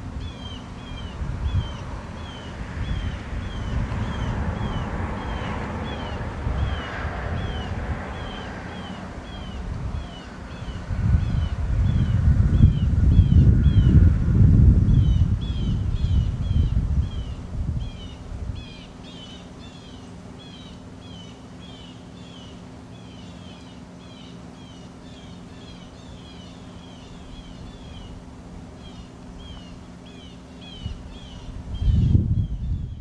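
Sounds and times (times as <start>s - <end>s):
wind rumble on microphone: 0.0s - 19.0s, 30.6s - 33.0s
low steady hum: 0.0s - 33.0s
bird chirping: 15.0s - 28.2s, 28.8s - 33.0s.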